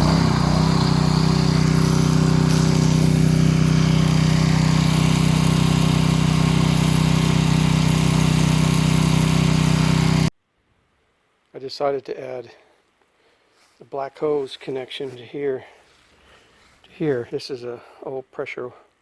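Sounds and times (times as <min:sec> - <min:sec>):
pressure washer engine running: 0:00.0 - 0:10.3.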